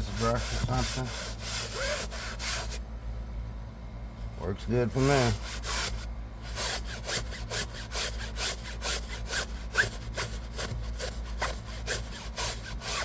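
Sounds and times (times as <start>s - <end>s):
brush scrubbing cloth seat: 0.0s - 2.5s.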